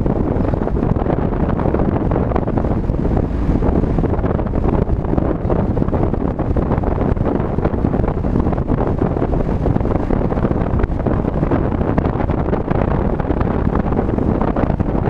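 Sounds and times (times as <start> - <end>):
car road noise: 0.0 - 15.0
wind rushing over microphone: 0.0 - 15.0.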